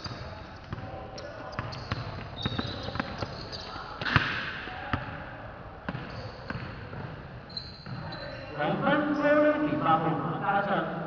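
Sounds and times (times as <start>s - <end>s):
basketball bouncing on court: 0.0s - 7.2s, 7.8s - 8.3s.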